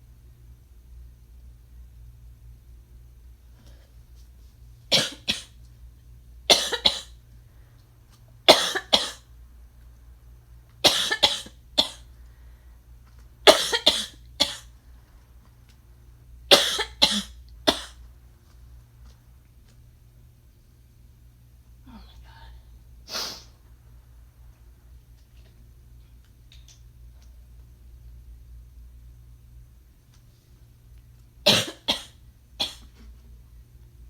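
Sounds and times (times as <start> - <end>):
person coughing: 4.9 - 5.6, 6.5 - 7.2, 8.5 - 9.2, 10.8 - 12.1, 13.5 - 14.7, 16.5 - 18.0, 31.5 - 33.1.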